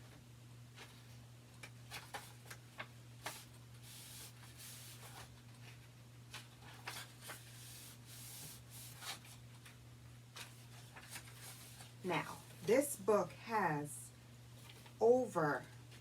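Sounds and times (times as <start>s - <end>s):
faint electrical hum: 0.0s - 16.0s
book pages turning: 0.8s - 12.0s.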